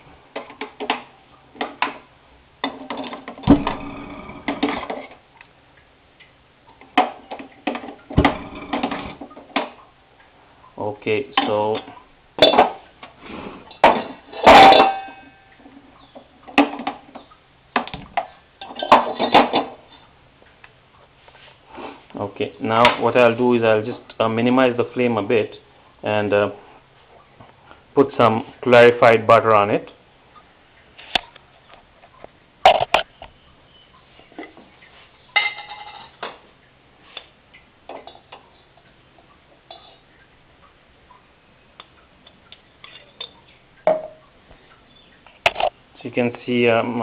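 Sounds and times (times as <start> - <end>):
metal cookware clanking: 11.4 - 12.8, 13.7 - 15.6, 18.2 - 20.1, 35.3 - 36.4, 39.6 - 40.1
metal spoon clinking cookware: 13.9 - 15.3, 35.4 - 36.2.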